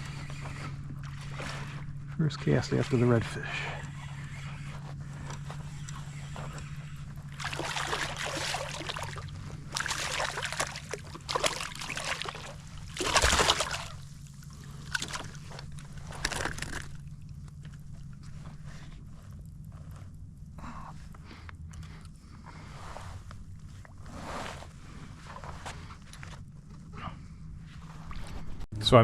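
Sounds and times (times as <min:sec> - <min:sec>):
steady low hum: 0:00.0 - 0:29.0
water splashing around kayak: 0:07.2 - 0:17.0.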